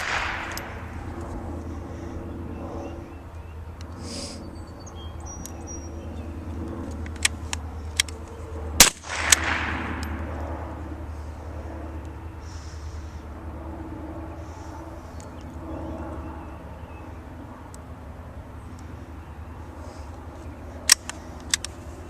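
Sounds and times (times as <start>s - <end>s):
rifle shot with echo: 0.0s - 0.9s, 8.8s - 10.2s
rifle action clicks: 0.0s - 1.3s, 6.6s - 10.2s, 20.8s - 21.8s
steady low hum: 0.0s - 22.0s.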